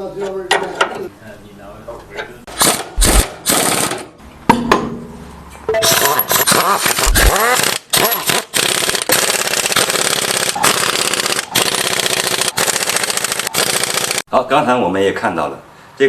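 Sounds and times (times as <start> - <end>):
impact wrench rattling: 2.6 - 4.1, 5.8 - 14.2.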